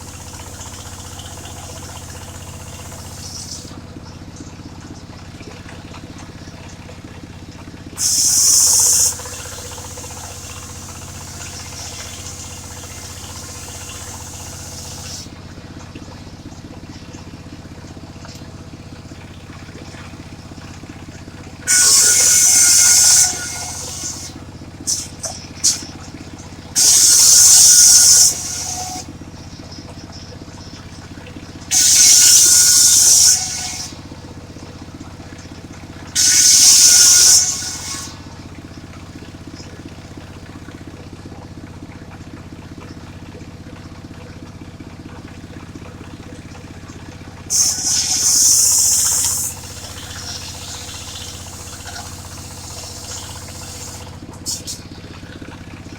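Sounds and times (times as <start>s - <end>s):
sawmill blade cutting log: 0.0s - 3.8s, 7.9s - 15.4s, 19.6s - 29.3s, 30.8s - 39.0s, 47.4s - 54.9s.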